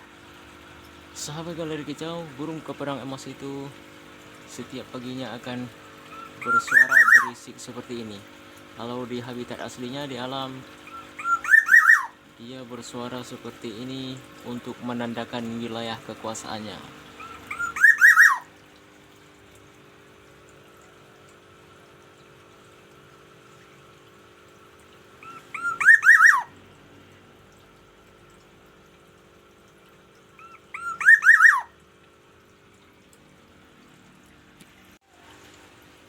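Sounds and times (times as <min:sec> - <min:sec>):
faint steady hum: 0:00.0 - 0:36.0
bird fluting whistled calls: 0:06.1 - 0:07.4, 0:10.8 - 0:12.2, 0:17.2 - 0:18.5, 0:25.2 - 0:26.5, 0:30.4 - 0:31.8.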